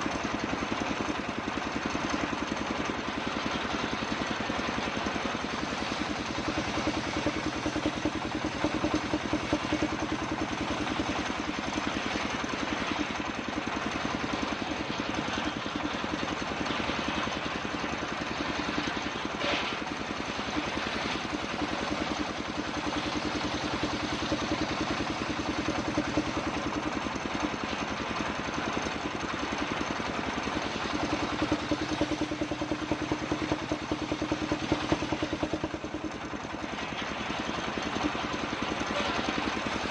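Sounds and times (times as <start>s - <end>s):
circular saw cutting wood: 18.9s - 26.6s, 38.7s - 39.9s.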